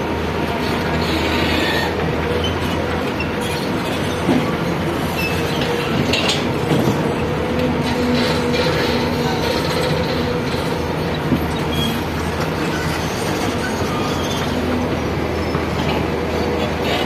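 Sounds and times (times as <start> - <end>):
excavator diesel engine running: 0.0 - 17.0
short metallic squeals: 11.5 - 15.8.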